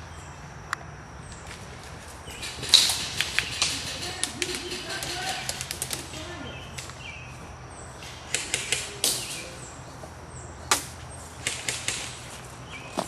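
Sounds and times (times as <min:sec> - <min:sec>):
airsoft gun shots: 0:08.0 - 0:09.5, 0:10.7 - 0:12.4.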